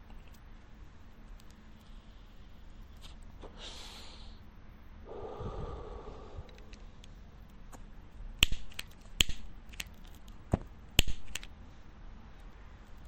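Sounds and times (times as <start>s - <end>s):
lighter gas hiss: 1.8s - 4.5s
lighter clicking: 8.4s - 9.9s, 11.0s - 11.5s.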